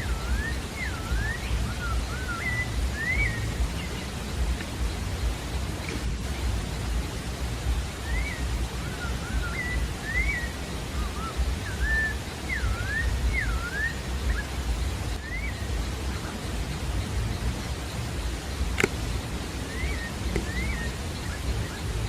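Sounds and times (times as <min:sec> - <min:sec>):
bird whistling song: 0:00.0 - 0:07.0, 0:07.8 - 0:22.0
low rumbling noise: 0:00.0 - 0:22.0.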